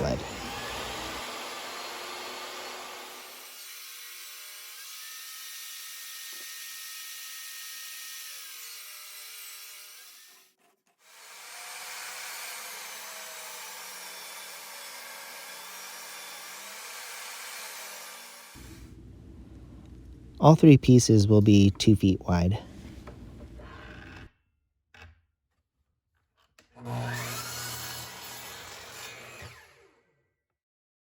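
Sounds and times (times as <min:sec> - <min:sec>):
table saw cutting plywood: 0:00.0 - 0:18.9, 0:26.8 - 0:30.0.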